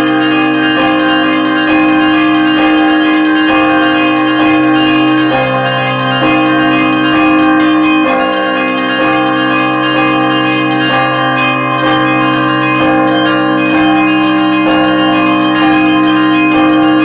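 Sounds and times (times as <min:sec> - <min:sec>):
church bells ringing: 0:00.0 - 0:17.0.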